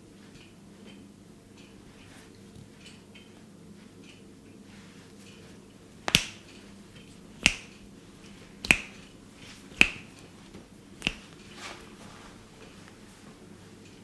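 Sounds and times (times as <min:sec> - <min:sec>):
sharp hand snaps: 0:06.1 - 0:06.5, 0:07.4 - 0:07.8, 0:08.6 - 0:09.1, 0:09.7 - 0:10.2, 0:11.0 - 0:11.4.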